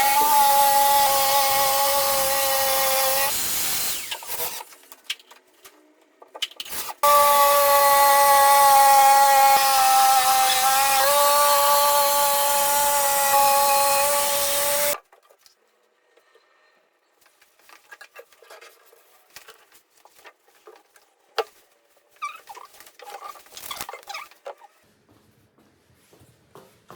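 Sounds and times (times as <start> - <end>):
power saw cutting countertop: 0.0 - 4.6, 7.0 - 15.0.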